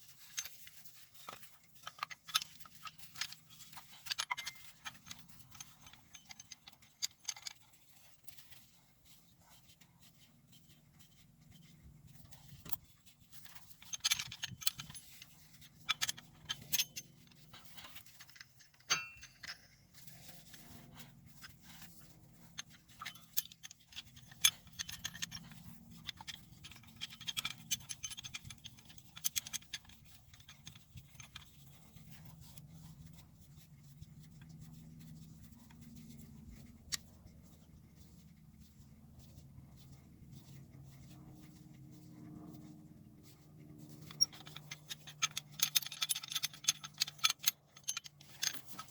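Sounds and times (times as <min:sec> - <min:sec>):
metal tools clinking and scraping: 0:00.0 - 0:08.7, 0:10.5 - 0:33.2, 0:43.8 - 0:48.9
steady low hum: 0:02.7 - 0:44.8.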